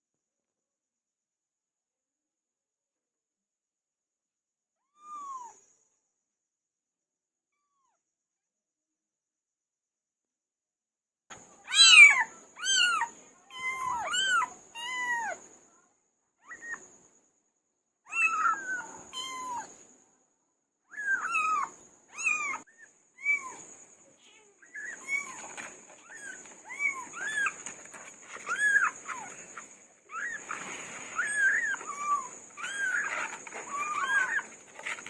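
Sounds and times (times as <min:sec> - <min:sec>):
kittens meowing: 0:11.7 - 0:15.4, 0:18.1 - 0:19.7, 0:21.0 - 0:22.6, 0:24.7 - 0:35.0.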